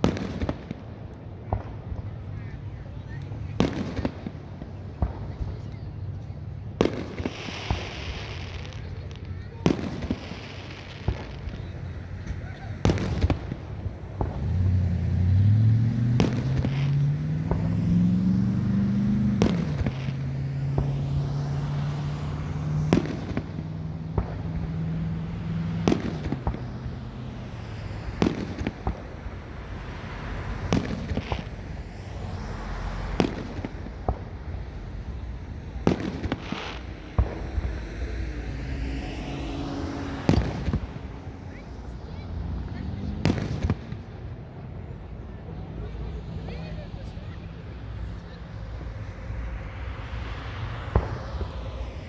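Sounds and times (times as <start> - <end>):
fireworks bangs: 0.0 - 52.0
low droning tone: 16.9 - 42.4
rumbling background: 19.3 - 52.0.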